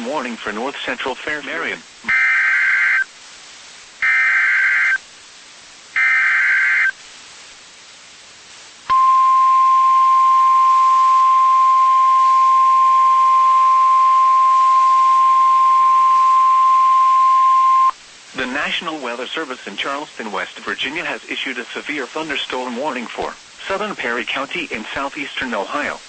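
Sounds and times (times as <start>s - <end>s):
steady warning alarm tone: 6.0s - 6.9s.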